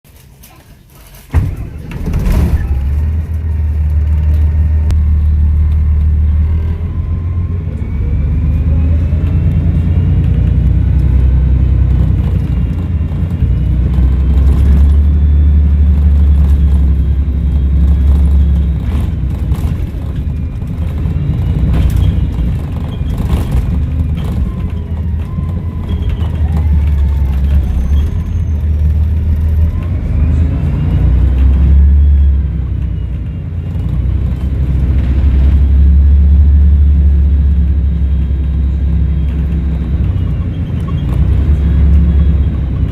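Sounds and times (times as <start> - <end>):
knocks and rattles: 0.1 - 5.0, 11.6 - 30.0
bus diesel engine rumbling: 0.1 - 42.9.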